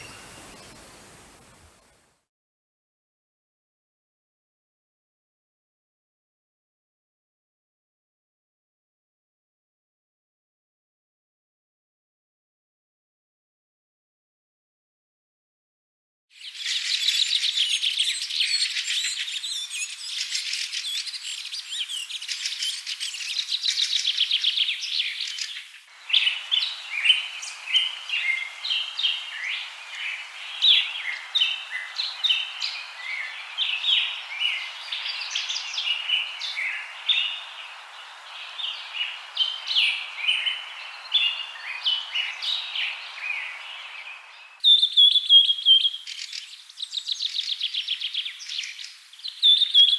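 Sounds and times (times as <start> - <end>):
birds calling and singing: 0.0 - 1.7, 16.4 - 49.9.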